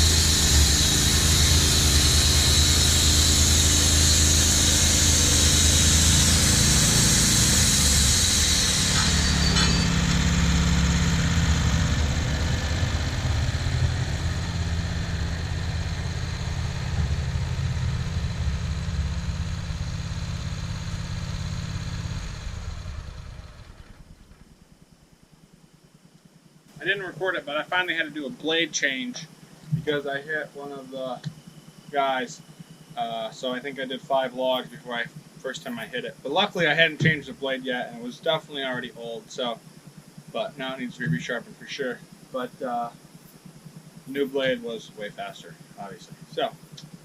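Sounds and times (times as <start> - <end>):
band blade cutting log: 0.0 - 10.3
sawmill engine running: 0.0 - 24.6, 26.7 - 47.0.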